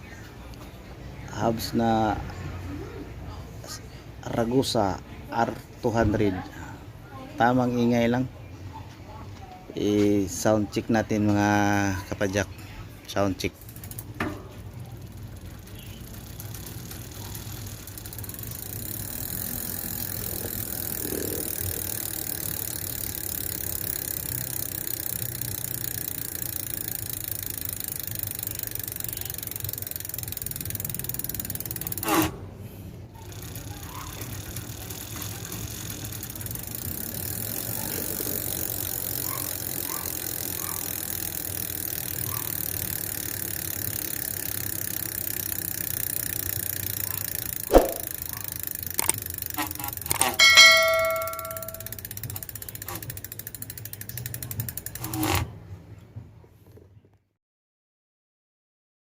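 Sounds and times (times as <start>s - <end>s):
bicycle hub freewheel clicking: 11.1s - 55.6s.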